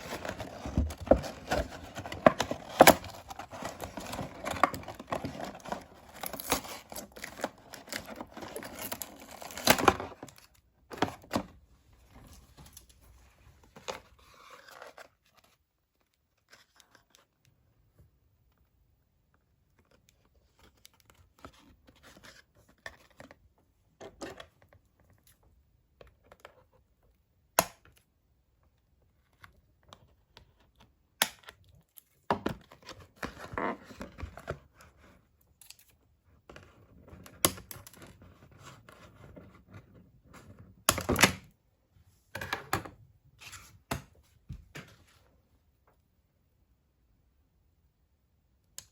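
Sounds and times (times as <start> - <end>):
packaging tearing and crinkling: 0.0 - 10.5.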